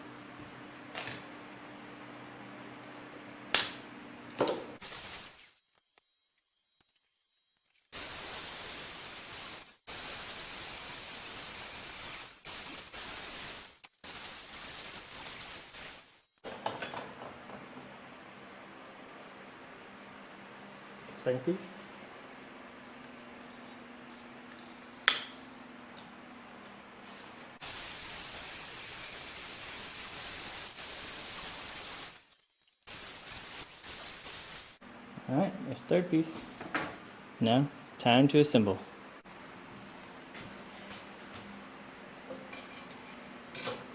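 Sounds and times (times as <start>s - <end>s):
hiss of metal being cut: 8.0s - 16.2s, 27.6s - 32.3s, 32.9s - 34.8s.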